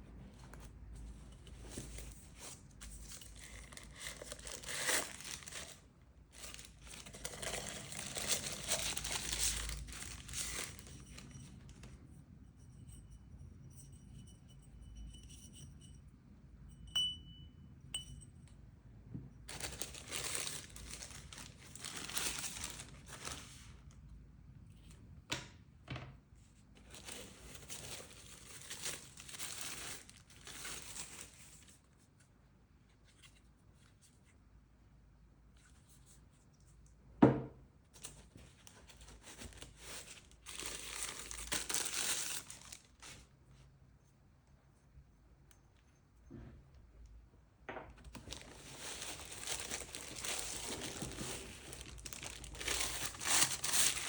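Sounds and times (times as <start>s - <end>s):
packaging torn and crinkled: 3.3s - 5.8s, 6.4s - 11.0s, 19.5s - 23.6s, 27.0s - 31.5s, 39.5s - 43.2s, 48.1s - 54.0s.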